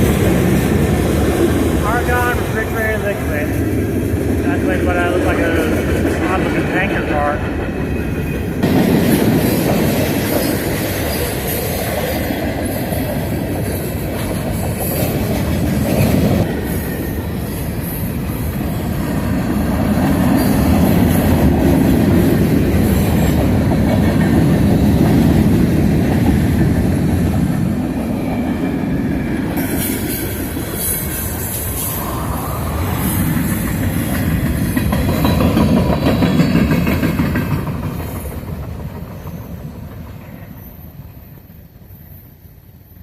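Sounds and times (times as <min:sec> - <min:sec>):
freight train wheels rumbling on rail: 0:00.0 - 0:43.0
wheels clicking over rail joints: 0:33.0 - 0:40.6.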